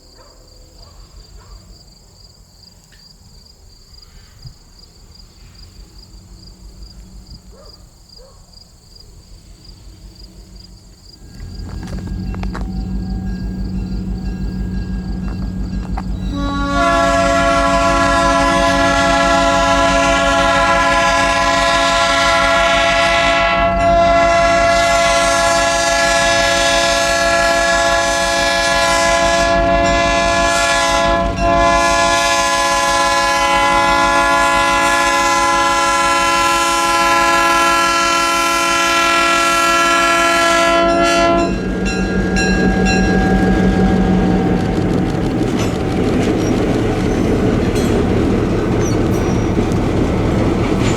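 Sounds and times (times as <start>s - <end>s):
train rumbling past: 3.7s - 50.9s
rail clatter: 9.1s - 34.6s, 40.1s - 50.9s
locomotive air horn blasts: 11.4s - 45.0s.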